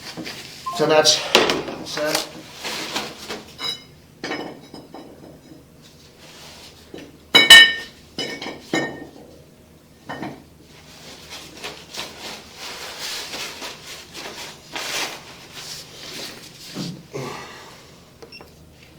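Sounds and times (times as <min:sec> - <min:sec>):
rustling and scraping: 0:10.8 - 0:17.0.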